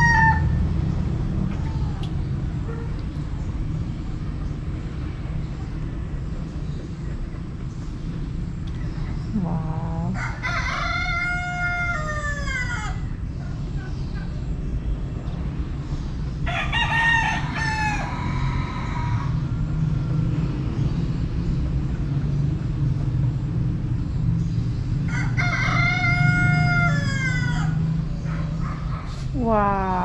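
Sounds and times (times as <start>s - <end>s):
rooster crowing: 0.0s - 0.6s, 10.2s - 13.1s, 16.5s - 19.5s, 25.1s - 27.9s.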